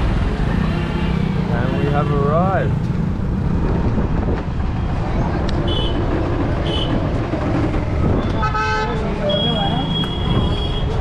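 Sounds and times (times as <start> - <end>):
traffic engines rumbling: 0.0 - 11.0
vehicle horn honking: 8.2 - 10.9.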